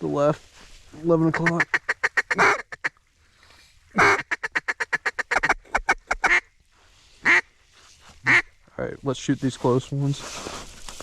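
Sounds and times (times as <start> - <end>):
duck call quacks: 1.3 - 2.9, 4.0 - 6.5, 7.2 - 7.5, 8.2 - 8.5.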